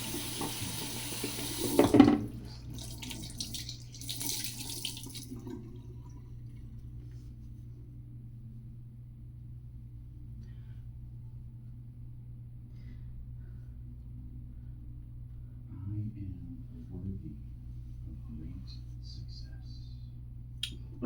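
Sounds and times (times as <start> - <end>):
sink tap running: 0.0 - 6.2
faint steady hum: 0.0 - 21.0.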